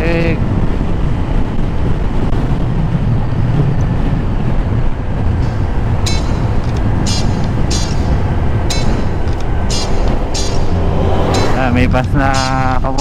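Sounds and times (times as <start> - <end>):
road noise: 0.0 - 13.0
wind on microphone: 0.0 - 13.0.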